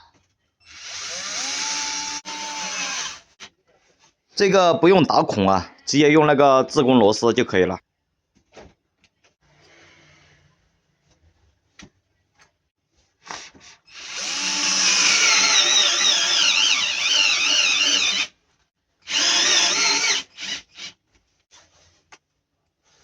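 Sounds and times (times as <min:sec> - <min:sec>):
power drill driving screws: 0:00.7 - 0:03.3, 0:13.9 - 0:18.3, 0:19.1 - 0:21.0.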